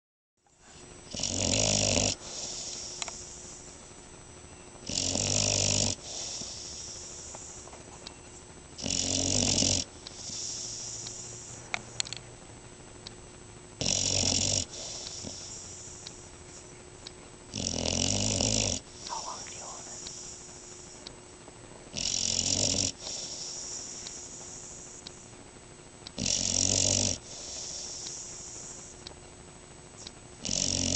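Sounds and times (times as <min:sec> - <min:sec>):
dog snoring: 0:01.1 - 0:03.8, 0:04.8 - 0:07.7, 0:08.8 - 0:11.9, 0:13.8 - 0:16.7, 0:17.5 - 0:21.0, 0:21.9 - 0:25.3, 0:26.1 - 0:29.0, 0:30.0 - 0:30.9
dog breathing softly: 0:05.9 - 0:07.9, 0:10.1 - 0:12.0, 0:14.6 - 0:16.7, 0:18.9 - 0:21.0, 0:23.0 - 0:25.2, 0:27.2 - 0:29.0.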